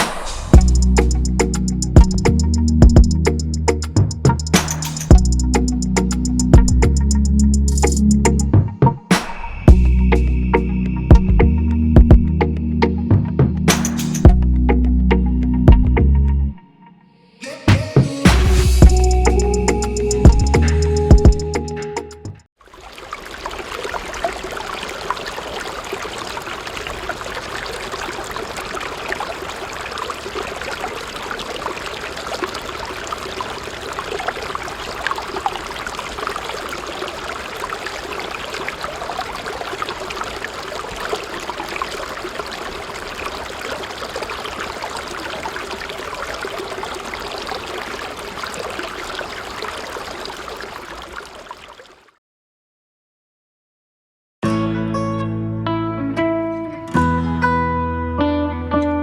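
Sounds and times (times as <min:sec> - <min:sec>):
water pouring from pump outlet: 0:22.6 - 0:52.1.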